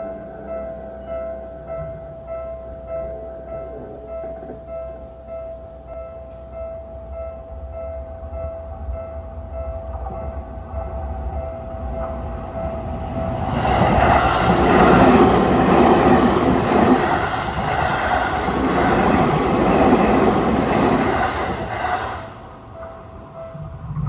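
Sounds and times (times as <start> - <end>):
electric train passing: 0.0 - 24.0
level crossing warning bell: 6.2 - 24.0.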